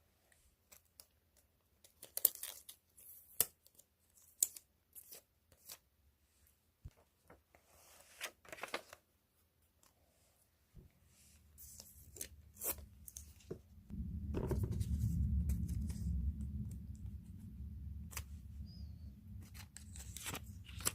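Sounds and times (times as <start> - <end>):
low handling rumble: 12.3 - 20.9
packing material crinkling: 19.4 - 20.9.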